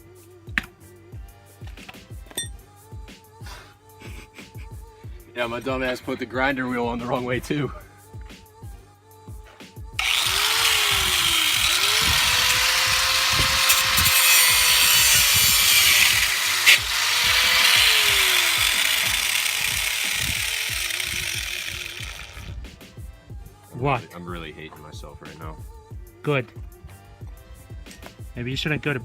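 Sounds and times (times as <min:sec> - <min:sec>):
angle grinder grinding steel: 0:10.0 - 0:22.6.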